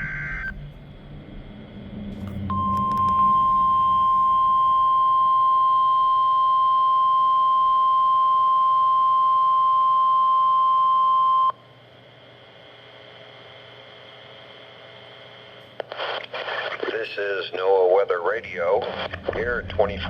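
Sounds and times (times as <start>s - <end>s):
steady loud alarm tone: 2.5s - 11.6s.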